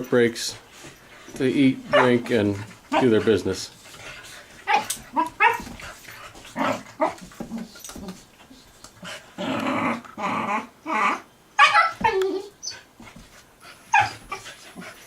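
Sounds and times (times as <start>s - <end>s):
puppies growling and yipping: 4.5s - 8.2s, 9.0s - 13.0s, 13.7s - 15.0s.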